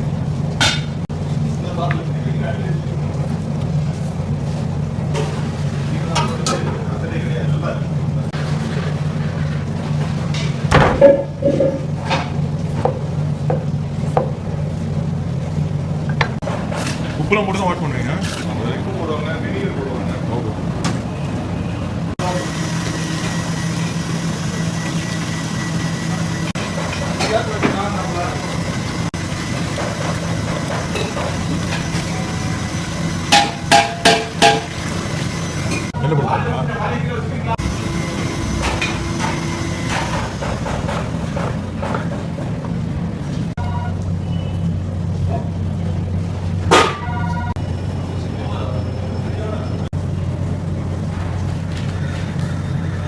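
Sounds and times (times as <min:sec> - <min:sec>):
steady low hum: 0:00.0 - 0:46.7
sharp knocks: 0:33.3 - 0:34.7
low hum: 0:37.4 - 0:41.4.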